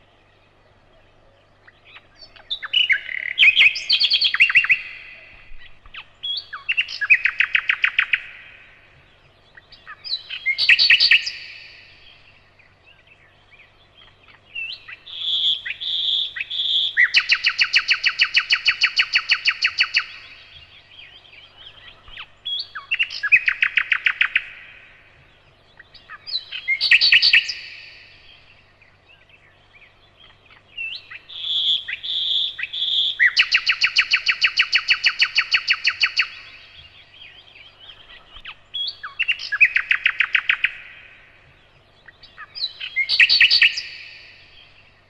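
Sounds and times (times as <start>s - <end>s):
nightingale singing: 0.0s - 45.0s.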